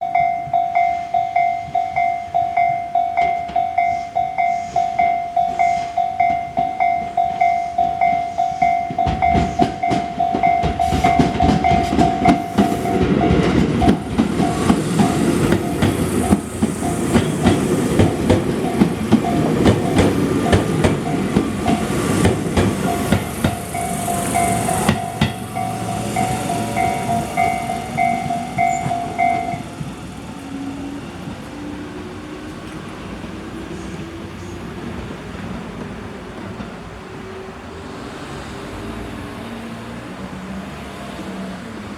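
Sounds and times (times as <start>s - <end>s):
level crossing bell ringing: 0.0s - 17.0s, 22.8s - 29.7s
train wheels clacking on rails: 0.0s - 37.0s.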